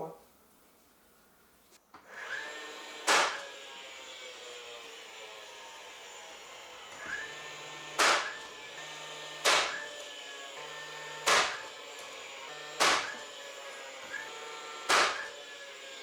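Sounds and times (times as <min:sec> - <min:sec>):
loud sharp bangs: 0:08.0 - 0:08.4, 0:09.4 - 0:09.8, 0:11.2 - 0:11.6, 0:12.8 - 0:13.2, 0:14.9 - 0:15.3.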